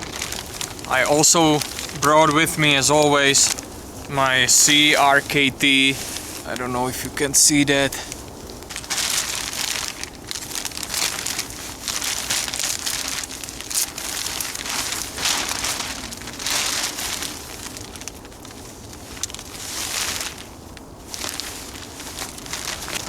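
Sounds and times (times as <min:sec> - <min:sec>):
plastic bag crinkling: 0:00.0 - 0:23.0.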